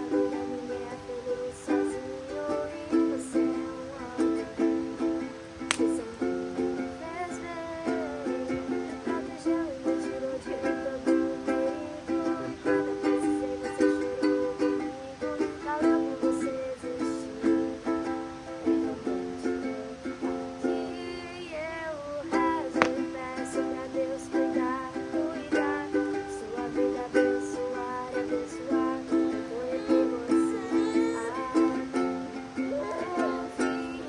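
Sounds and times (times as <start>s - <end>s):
person singing: 0.0s - 34.0s
ukulele strumming chords: 0.0s - 34.0s.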